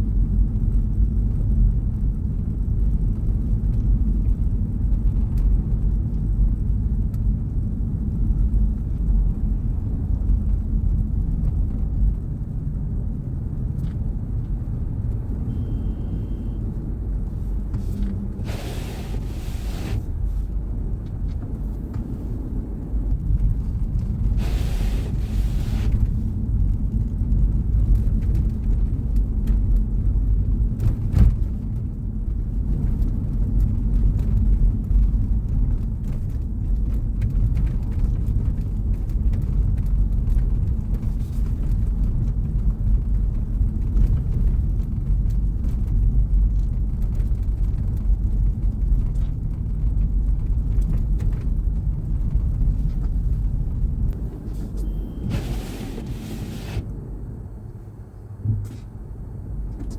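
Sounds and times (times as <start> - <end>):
car road and engine rumble: 0.0 - 59.9
short hiss: 18.4 - 20.1, 24.4 - 26.0, 54.8 - 56.8.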